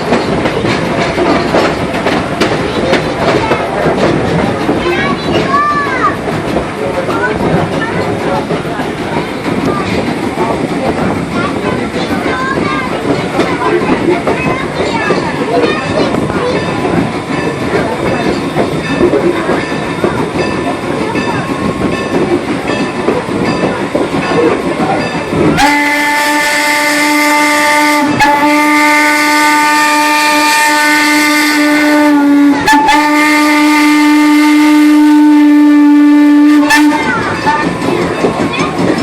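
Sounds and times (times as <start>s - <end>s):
train rumbling and rattling: 0.0s - 39.0s
steam locomotive whistle: 25.6s - 37.2s.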